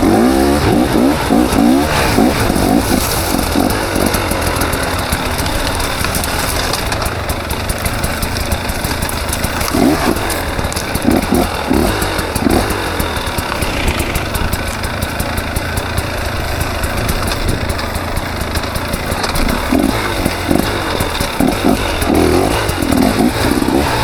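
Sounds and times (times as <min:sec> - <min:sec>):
dirt bike engine revving: 0:00.0 - 0:24.0.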